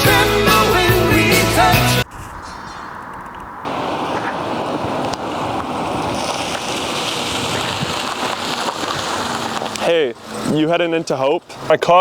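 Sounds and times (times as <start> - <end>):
vehicle road noise: 0.0 - 12.0
rushing wind: 2.0 - 10.6.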